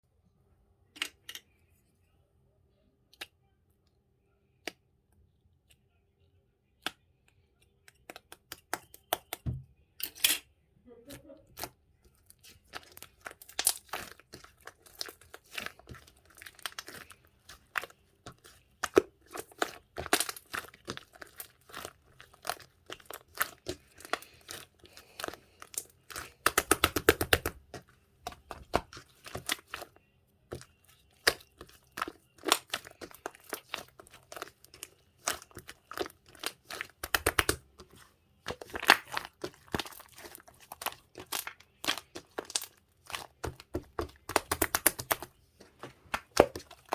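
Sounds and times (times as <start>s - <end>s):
slime squished by hand: 11.6s - 46.9s.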